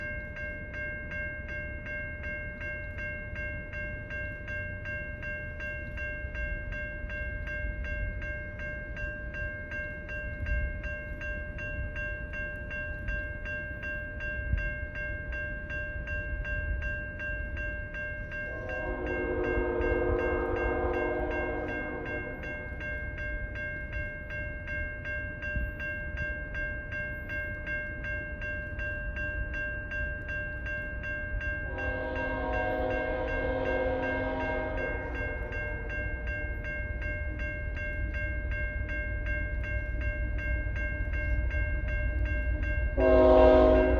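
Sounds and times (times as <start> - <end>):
pulsing high ringing: 0.0 - 43.9
train rumbling: 0.0 - 43.9
locomotive horn blast: 18.5 - 22.4, 31.7 - 35.5, 43.0 - 43.9.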